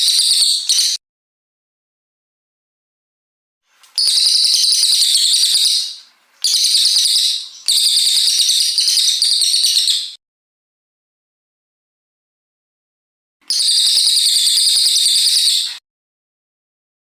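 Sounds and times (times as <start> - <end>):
songbird whistling rapid notes: 3.9 - 10.2, 13.5 - 15.8.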